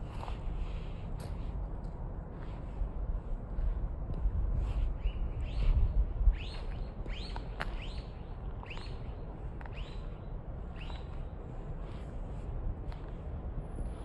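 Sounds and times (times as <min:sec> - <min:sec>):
bird chirping: 0:06.4 - 0:10.2, 0:10.8 - 0:11.2.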